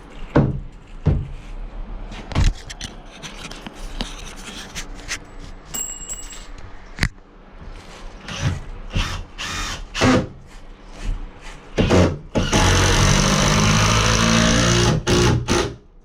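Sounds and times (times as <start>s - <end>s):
power drill running: 9.0s - 9.9s, 12.4s - 15.7s.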